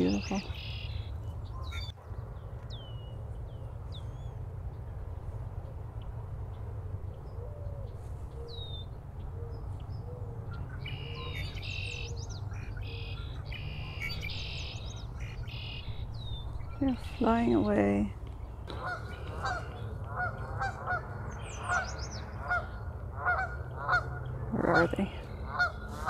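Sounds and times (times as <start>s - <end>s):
blackbirds chirping: 0.0s - 4.9s, 5.6s - 26.0s
steady low rumble: 0.0s - 26.0s
buzzy bird calls: 9.5s - 18.1s, 18.7s - 26.0s.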